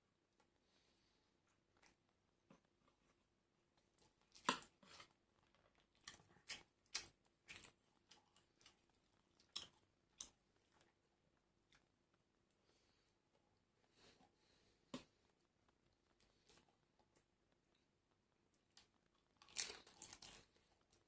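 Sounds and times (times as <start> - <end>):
food crunching while chewed: 3.8 - 11.0, 18.6 - 21.0.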